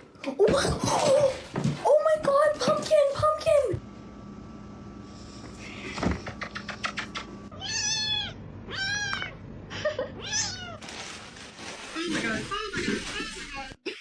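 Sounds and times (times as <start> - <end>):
cat meowing: 7.5 - 9.4, 10.2 - 10.8.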